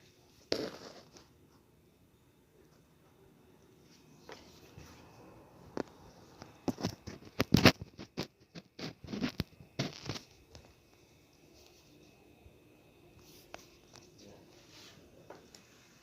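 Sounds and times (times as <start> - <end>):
transformer crackling and popping: 5.8 - 10.7.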